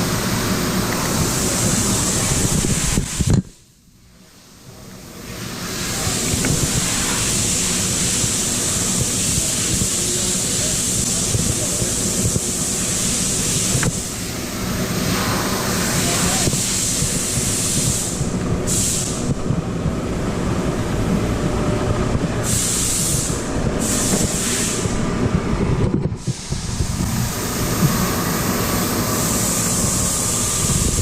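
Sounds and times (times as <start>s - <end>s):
machinery rumble: 4.6s - 31.0s
high hiss: 5.2s - 19.4s, 22.4s - 25.0s, 26.2s - 31.0s.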